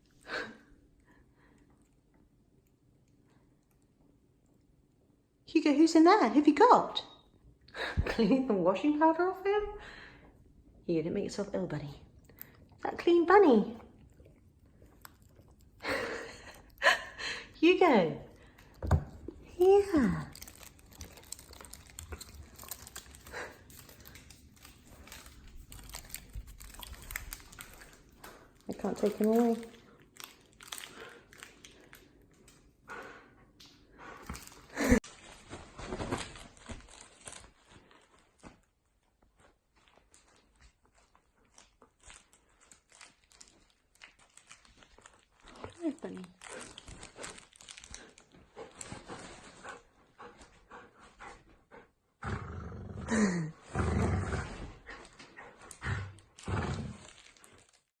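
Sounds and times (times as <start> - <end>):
dog chewing and gnawing: 13.8 - 16.8, 19.0 - 32.2, 41.0 - 50.8, 54.8 - 57.9
dog grumbling: 52.2 - 54.8.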